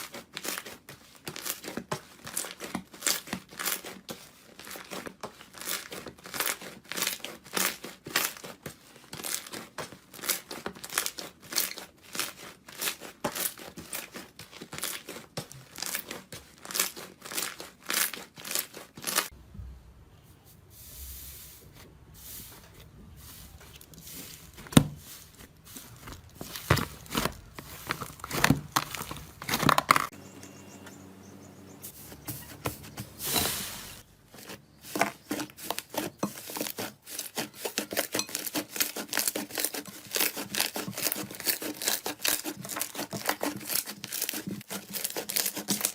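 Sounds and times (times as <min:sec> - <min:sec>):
slime crackling and popping: 0:39.1 - 0:44.4.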